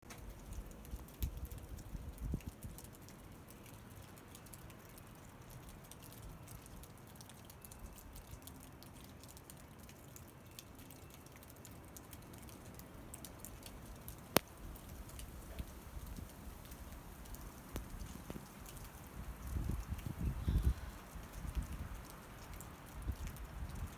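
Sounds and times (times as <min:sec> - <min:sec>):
snow pattering: 0:14.3 - 0:22.5.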